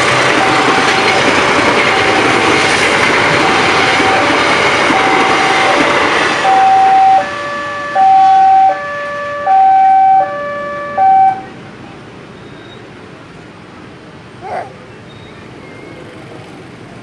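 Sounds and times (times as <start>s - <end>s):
level crossing two-tone siren: 4.9s - 11.5s.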